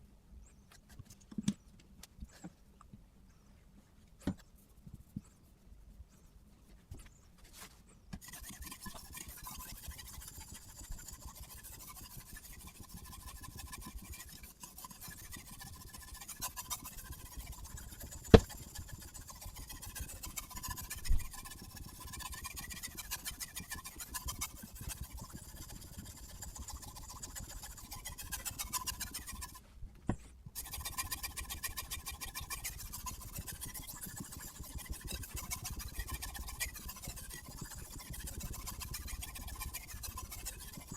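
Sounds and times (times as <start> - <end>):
sharpening stone scraping knife: 8.2 - 29.6, 30.6 - 40.9.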